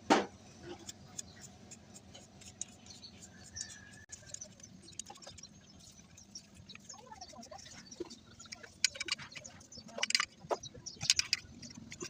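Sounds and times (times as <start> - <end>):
tools clicking and tapping: 0.7 - 5.5, 8.4 - 12.0.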